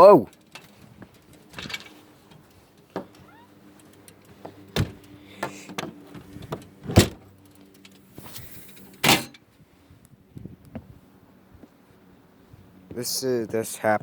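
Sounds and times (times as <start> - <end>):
knocks and thumps: 4.8 - 7.2.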